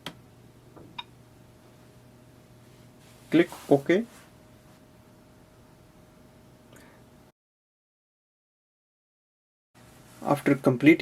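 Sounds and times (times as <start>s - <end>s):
faint room hiss: 0.0s - 7.3s, 9.8s - 11.0s.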